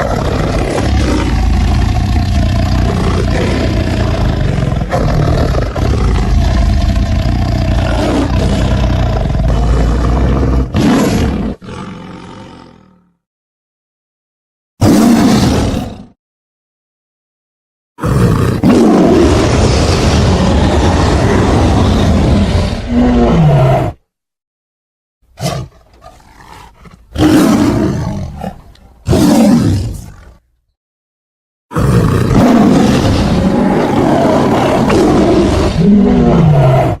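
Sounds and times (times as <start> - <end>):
tiger roaring: 0.0 - 13.2, 14.8 - 16.2, 18.0 - 24.0, 25.4 - 30.4, 31.7 - 37.0.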